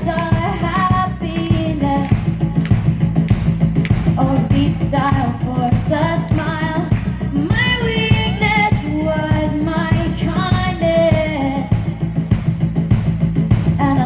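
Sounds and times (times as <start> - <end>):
woman singing: 0.0 - 3.0, 4.1 - 12.0, 13.8 - 14.0
pop band with pulsing beat: 0.0 - 14.0.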